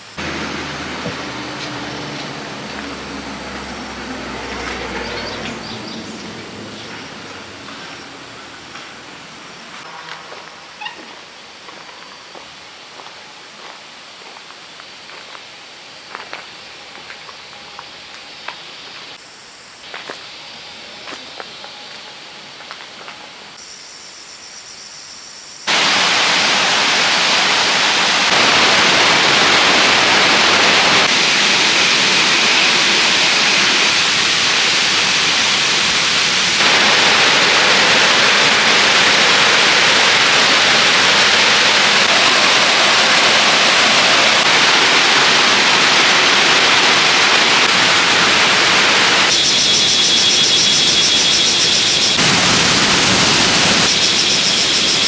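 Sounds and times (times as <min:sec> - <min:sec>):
stream water rushing: 0:00.0 - 0:09.9, 0:25.7 - 0:55.0.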